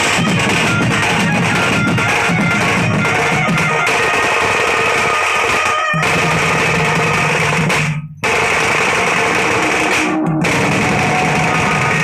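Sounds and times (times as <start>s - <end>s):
band playing loud music: 0.0s - 3.9s, 9.0s - 12.0s
heavy drumming and snare: 0.0s - 12.0s.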